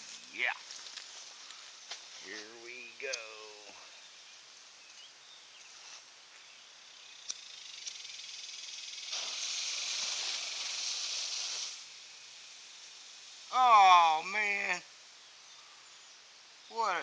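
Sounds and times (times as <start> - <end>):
fuse hissing: 5.6 - 16.9.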